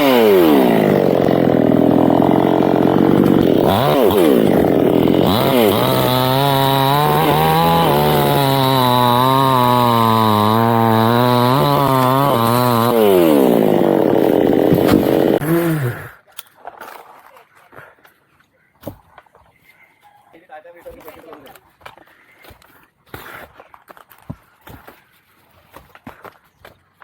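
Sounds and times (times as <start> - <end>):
chainsaw revving and cutting wood: 0.0 - 16.2.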